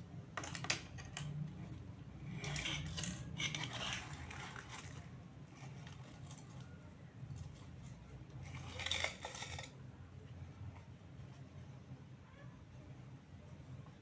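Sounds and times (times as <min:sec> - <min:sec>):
plastic toys clicking and knocking: 0:00.3 - 0:01.6
packaging scraping and rustling: 0:02.4 - 0:06.7.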